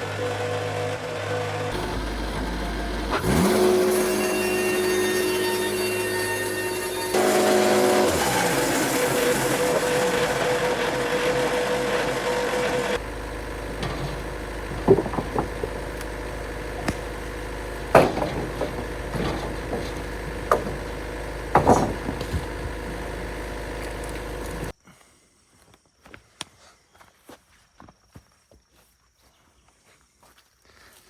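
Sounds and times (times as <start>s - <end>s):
sawmill running: 0.0s - 24.7s
sharp knocks and clatters: 7.1s - 24.7s.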